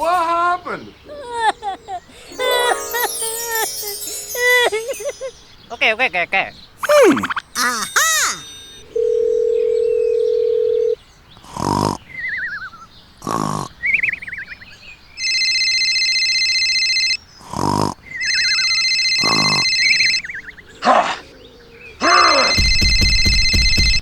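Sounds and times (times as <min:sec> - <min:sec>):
chirpy falling warbles: 0:06.8 - 0:08.8
high electronic ringing tone: 0:07.8 - 0:11.0, 0:22.5 - 0:24.0
dial tone: 0:09.0 - 0:11.0
growl-like animal cries: 0:20.7 - 0:22.6.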